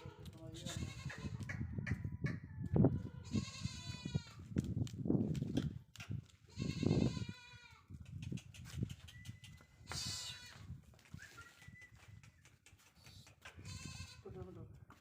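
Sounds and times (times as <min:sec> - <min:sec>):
goat bleating: 0:00.0 - 0:01.4, 0:03.0 - 0:04.4, 0:06.5 - 0:07.9, 0:09.9 - 0:10.6, 0:13.6 - 0:14.2.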